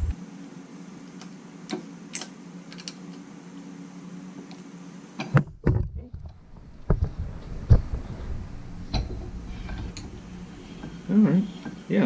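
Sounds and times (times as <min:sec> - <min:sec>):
steady low hum: 0:00.0 - 0:12.0
metal parts clicking and tapping: 0:01.7 - 0:03.0.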